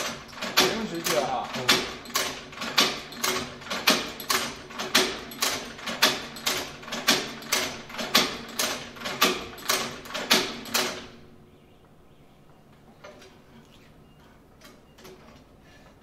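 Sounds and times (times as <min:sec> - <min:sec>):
leather sewing machine clacking: 0:00.0 - 0:11.1.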